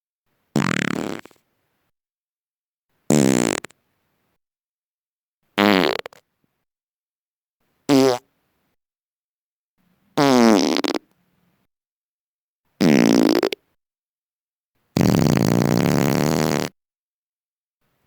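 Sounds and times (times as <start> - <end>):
buzzing farts: 0.6 - 1.4, 5.6 - 6.2, 10.2 - 11.0, 12.8 - 13.6, 15.0 - 16.8.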